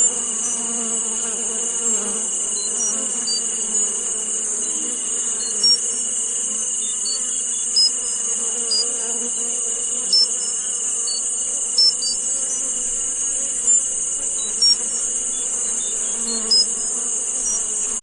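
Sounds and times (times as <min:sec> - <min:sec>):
steady high-pitched hiss: 0:00.0 - 0:18.0.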